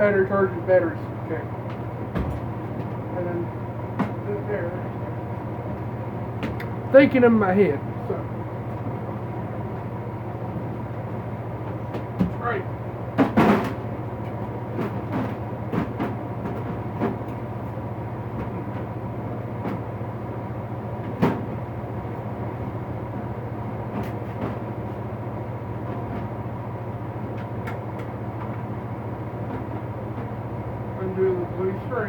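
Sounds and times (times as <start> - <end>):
steady low hum: 0.0 - 32.0
items knocking on shelves: 13.2 - 13.8.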